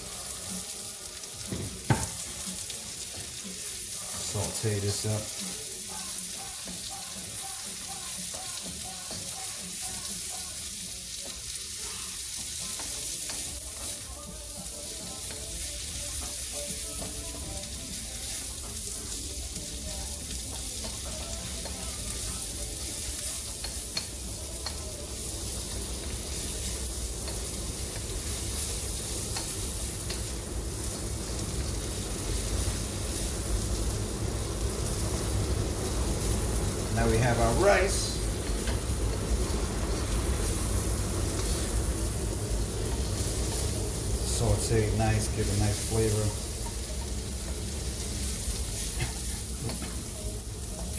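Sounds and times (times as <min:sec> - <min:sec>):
vegetables sizzling in a pan: 0:00.0 - 0:50.9
utensil clicking against pan: 0:23.1 - 0:24.9.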